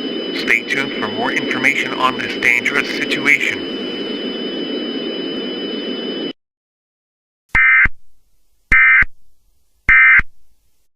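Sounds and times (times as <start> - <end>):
static hiss with high whine: 0.0 - 4.3.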